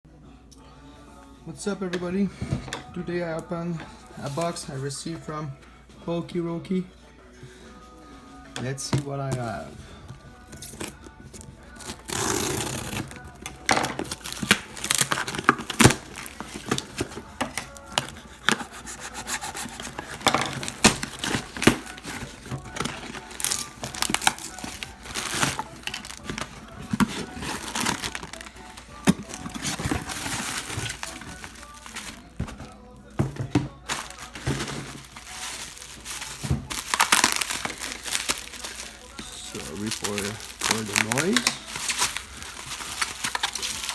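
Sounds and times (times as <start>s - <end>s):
packaging rustling and tearing: 10.5s - 43.9s.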